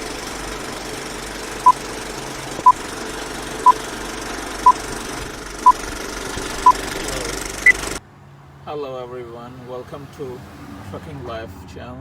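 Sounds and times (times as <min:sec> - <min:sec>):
engine idling: 0:00.0 - 0:08.0.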